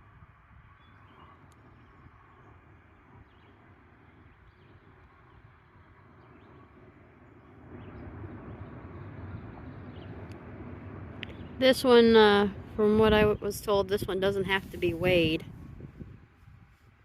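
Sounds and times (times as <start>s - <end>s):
distant train rumbling: 6.7s - 16.8s.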